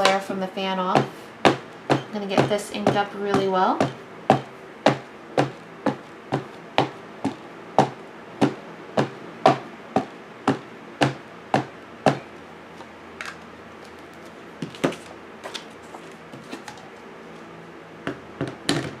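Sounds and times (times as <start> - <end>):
ink pad tapping on stamp: 1.0 - 7.0.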